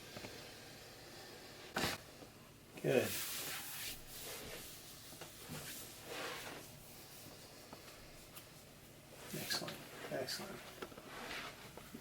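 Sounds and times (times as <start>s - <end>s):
person breathing softly: 6.8s - 8.7s.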